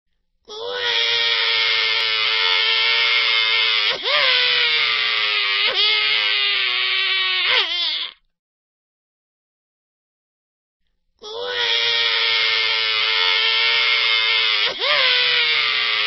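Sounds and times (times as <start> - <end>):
cartoon crying wail: 0.5 - 8.2, 11.2 - 16.0.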